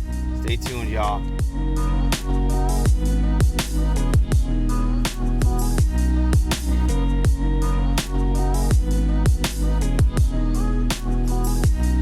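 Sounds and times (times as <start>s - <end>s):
electronic music with heavy bass: 0.4s - 1.3s.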